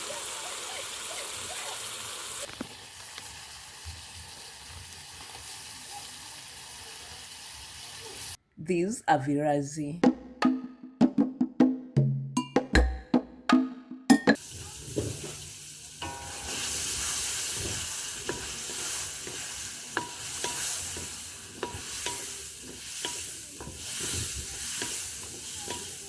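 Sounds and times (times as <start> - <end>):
vegetables sizzling in a pot: 0.0 - 8.4, 14.4 - 26.0.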